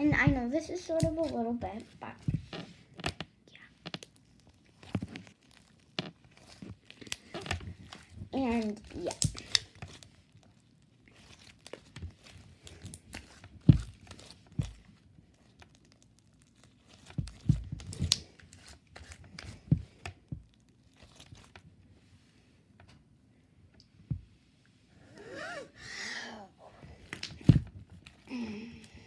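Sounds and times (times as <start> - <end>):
slime crackling and popping: 3.8 - 21.7, 27.0 - 29.0.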